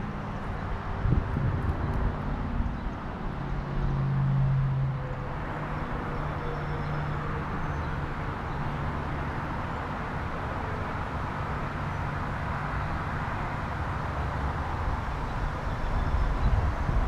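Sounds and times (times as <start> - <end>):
wind buffeting microphone: 0.8 - 2.9, 15.7 - 17.0.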